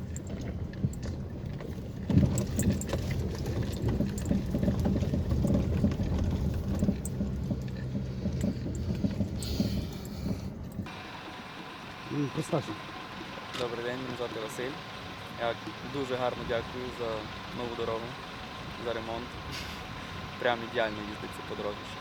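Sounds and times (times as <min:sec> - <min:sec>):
car knocks and rattles: 0:00.0 - 0:11.0
engine and tyre rumble: 0:00.0 - 0:22.0.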